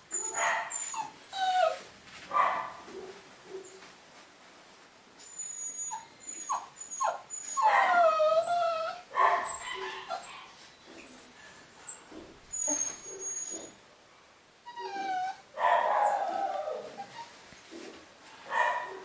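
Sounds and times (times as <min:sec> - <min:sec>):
puppies whimpering and yipping: 0:00.2 - 0:01.8, 0:05.2 - 0:10.4, 0:11.0 - 0:13.8, 0:14.7 - 0:15.4.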